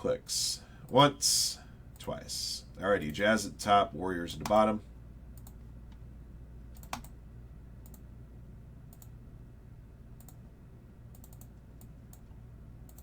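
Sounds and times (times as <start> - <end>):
steady low hum: 0.0 - 13.0
light computer clicks: 5.4 - 6.0, 6.7 - 7.2, 7.8 - 8.1, 8.9 - 9.2, 10.2 - 10.4, 11.1 - 13.0.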